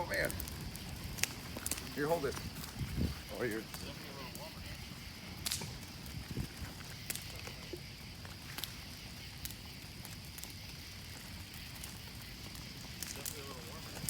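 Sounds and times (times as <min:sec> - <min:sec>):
fire crackling and popping: 0:00.0 - 0:14.0
fire rumbling: 0:00.0 - 0:14.0.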